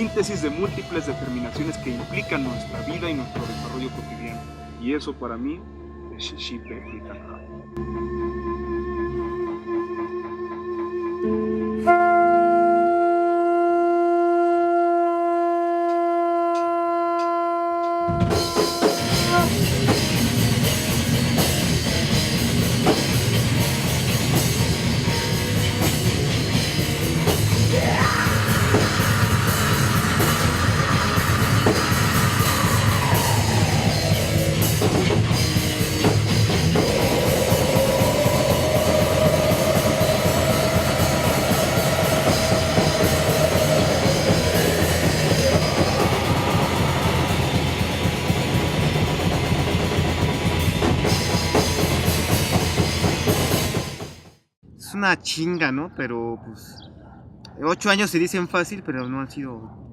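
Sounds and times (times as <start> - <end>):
heavy metal band playing: 0.0 - 5.1, 18.1 - 54.3
held wind instrument note: 7.6 - 20.4, 23.6 - 49.8.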